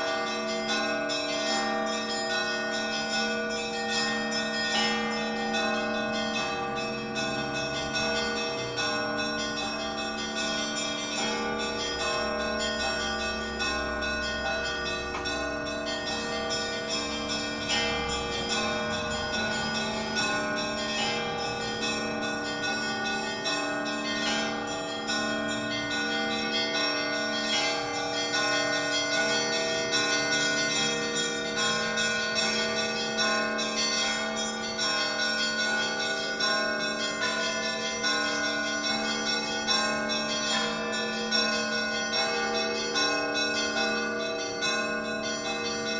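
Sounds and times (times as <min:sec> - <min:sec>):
church bells pealing: 0:00.0 - 0:45.9
deep low bell tone: 0:00.0 - 0:45.9.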